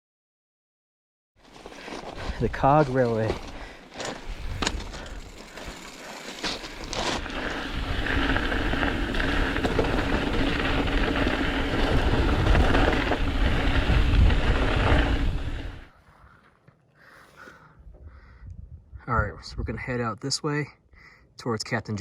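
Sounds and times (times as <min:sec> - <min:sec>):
train running: 0:03.3 - 0:15.8.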